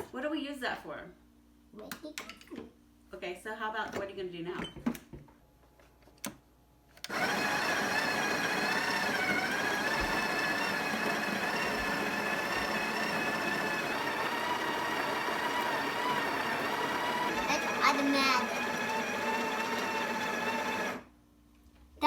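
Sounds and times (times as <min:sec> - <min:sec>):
coffee grinder whining: 0:07.1 - 0:21.1.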